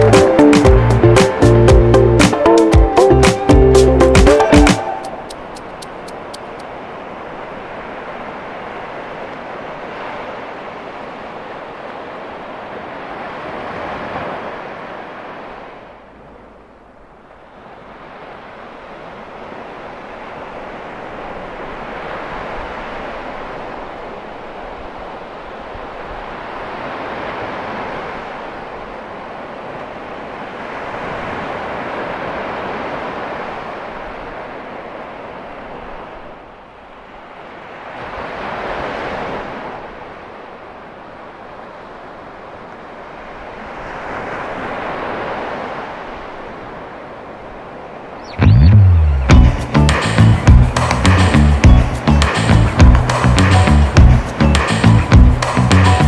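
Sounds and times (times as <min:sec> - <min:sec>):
ocean surf breaking: 0:00.0 - 0:16.6, 0:17.5 - 0:56.0.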